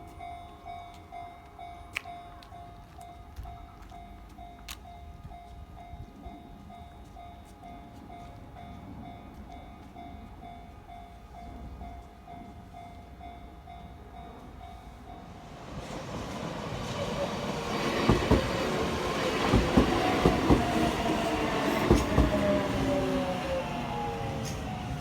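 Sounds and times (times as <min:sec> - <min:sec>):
level crossing warning bell: 0:00.0 - 0:25.0
train wheels clacking: 0:15.8 - 0:24.8.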